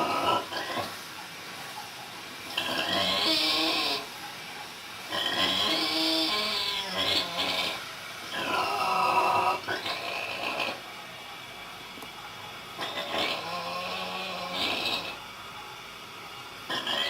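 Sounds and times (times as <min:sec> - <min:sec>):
pig snoring: 0:00.0 - 0:01.0, 0:02.5 - 0:04.1, 0:05.0 - 0:10.9, 0:12.8 - 0:15.6, 0:16.6 - 0:17.0
pig breathing: 0:00.0 - 0:10.8, 0:12.1 - 0:15.8.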